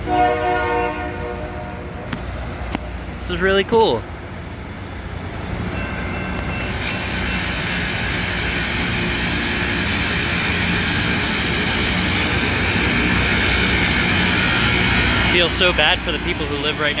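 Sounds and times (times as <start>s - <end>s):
low engine drone: 6.4s - 17.0s
rail grinder harsh hiss: 6.6s - 17.0s.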